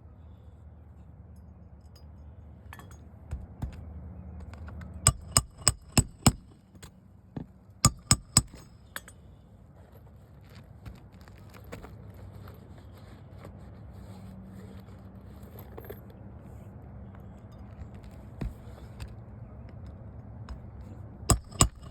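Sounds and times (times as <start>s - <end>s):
hammer striking nails: 5.1s - 6.6s, 7.8s - 9.1s, 21.3s - 21.9s.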